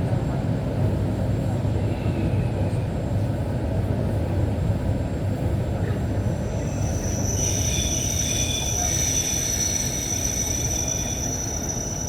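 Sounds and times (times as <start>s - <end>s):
train rumbling on rails: 0.0s - 12.0s
train wheels squealing: 5.7s - 12.0s.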